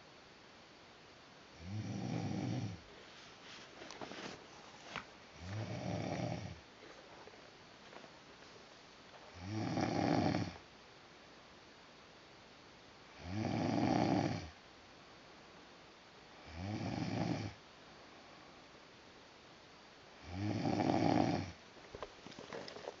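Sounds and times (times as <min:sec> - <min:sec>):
man snoring: 0:01.6 - 0:02.8, 0:05.4 - 0:06.6, 0:09.3 - 0:10.6, 0:13.2 - 0:14.5, 0:16.4 - 0:17.6, 0:20.2 - 0:21.6.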